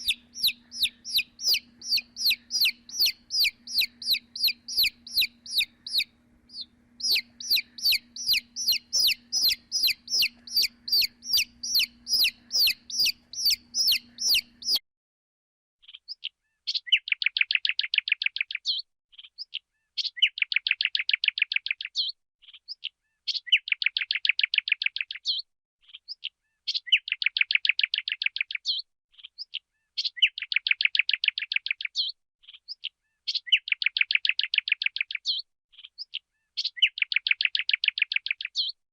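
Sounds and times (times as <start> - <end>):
low steady hum: 0.0 - 14.8
sparrows chirping: 0.0 - 14.8.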